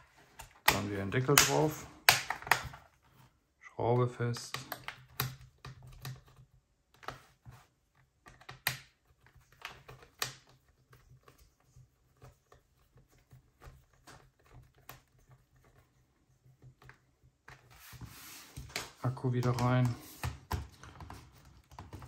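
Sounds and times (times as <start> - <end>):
plastic laptop case handled: 18.5 - 22.0.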